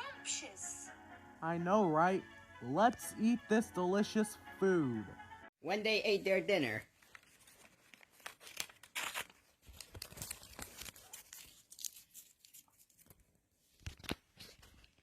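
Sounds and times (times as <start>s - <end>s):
crinkling material rustling: 6.8s - 15.0s.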